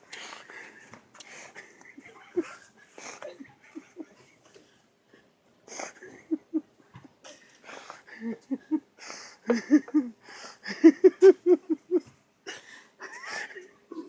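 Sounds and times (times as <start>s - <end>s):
person breathing wheezily: 7.3s - 9.6s, 10.2s - 10.8s.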